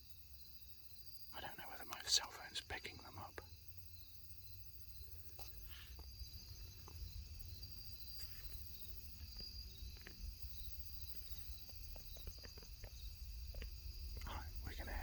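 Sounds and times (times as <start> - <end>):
insects trilling: 0.0 - 15.0
faint ticks: 1.4 - 3.5, 5.2 - 15.0.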